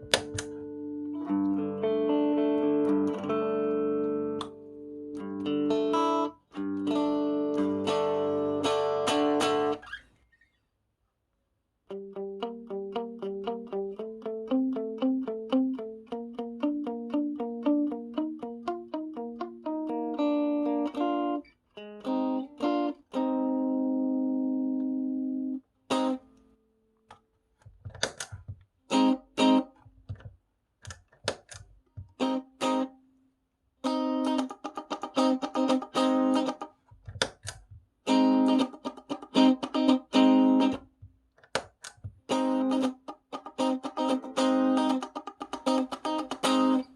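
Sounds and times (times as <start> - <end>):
clean electric guitar: 0.0 - 10.0, 11.9 - 26.5, 33.8 - 36.7, 37.4 - 40.9, 42.3 - 46.9.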